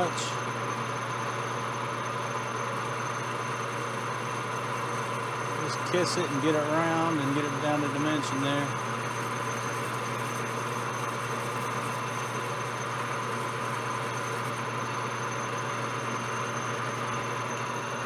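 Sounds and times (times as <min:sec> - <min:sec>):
metal lathe running: 0:00.0 - 0:18.0.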